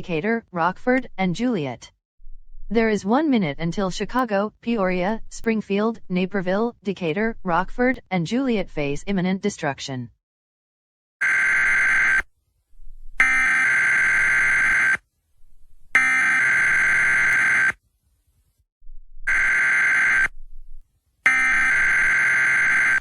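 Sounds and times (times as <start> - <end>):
electronic alarm buzzer: 11.2 - 12.3, 13.2 - 15.0, 15.9 - 17.8, 19.3 - 20.3, 21.3 - 23.0.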